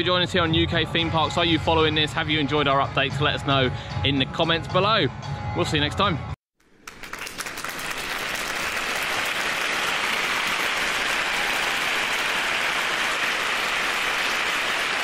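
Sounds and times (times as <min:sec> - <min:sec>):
audience applause: 0:06.7 - 0:15.0.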